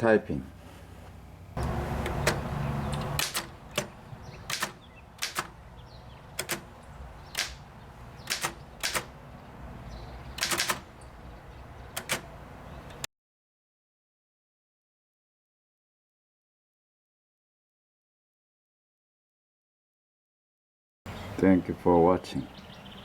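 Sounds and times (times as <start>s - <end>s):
typewriter keystrokes: 3.0s - 3.9s, 4.5s - 5.6s, 6.3s - 6.7s, 7.3s - 7.6s, 8.2s - 9.1s, 10.4s - 10.9s, 11.9s - 12.3s.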